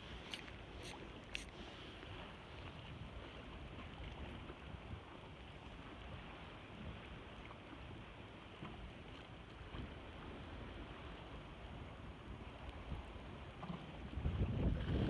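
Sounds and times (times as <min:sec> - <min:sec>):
wind buffeting microphone: 0:14.0 - 0:15.0.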